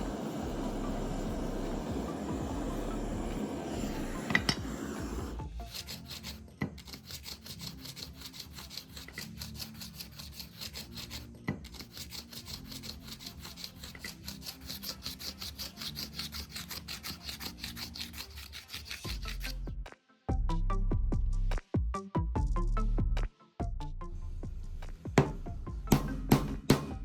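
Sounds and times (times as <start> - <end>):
wood being rasped by hand: 0.0 - 19.8.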